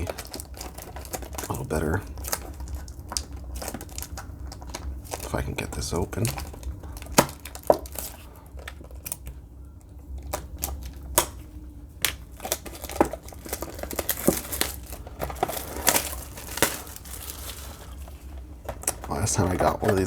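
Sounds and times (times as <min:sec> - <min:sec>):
cardboard tearing: 0:00.0 - 0:09.3, 0:10.2 - 0:20.0
sharp crackles: 0:00.0 - 0:09.3, 0:10.2 - 0:20.0
wrapping crinkling: 0:00.0 - 0:20.0.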